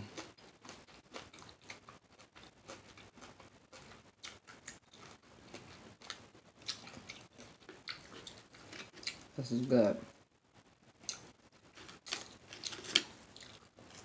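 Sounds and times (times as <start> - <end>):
close chewing with wet smacks: 0.2 - 9.3, 13.3 - 14.0.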